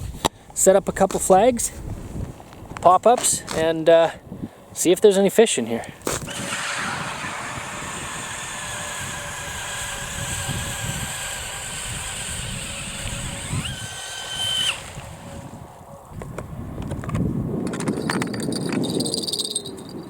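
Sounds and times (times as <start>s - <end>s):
cordless drill motor whine: 6.2s - 15.9s.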